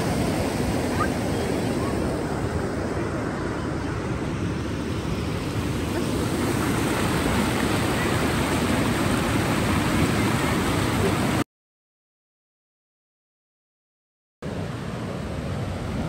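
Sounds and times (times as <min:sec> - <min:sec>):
waterfall rushing: 0:00.0 - 0:04.4, 0:05.1 - 0:11.4.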